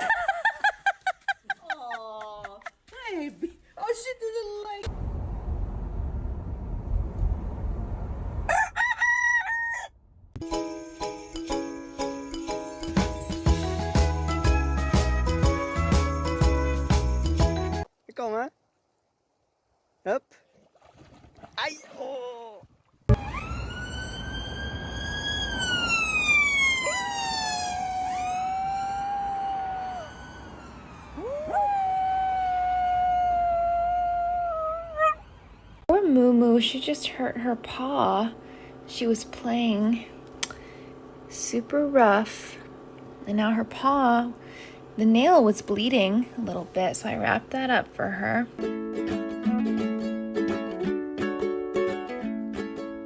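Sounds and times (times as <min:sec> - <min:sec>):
low rumbling noise: 0:04.9 - 0:08.5
music with bell-like tones: 0:10.5 - 0:17.9
dog howling: 0:26.6 - 0:30.1, 0:31.2 - 0:35.2.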